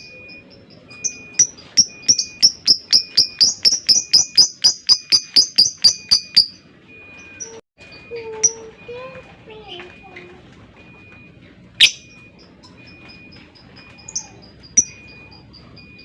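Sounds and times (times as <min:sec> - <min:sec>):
lovebird chirping: 0:00.0 - 0:06.6, 0:11.8 - 0:16.0.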